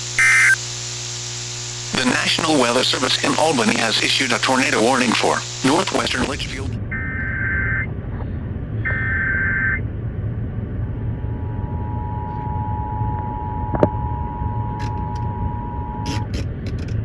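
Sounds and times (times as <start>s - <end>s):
two-tone attention signal: 0.2s - 0.6s
warbling data screech: 0.2s - 0.7s.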